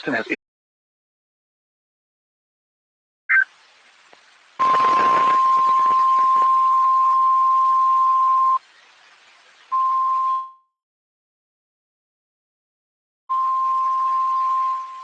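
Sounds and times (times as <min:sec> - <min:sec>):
radio hiss: 0:00.0 - 0:00.4, 0:03.3 - 0:09.8
static crackles: 0:03.3 - 0:09.8
steady high alarm tone: 0:04.6 - 0:08.6, 0:13.3 - 0:15.0.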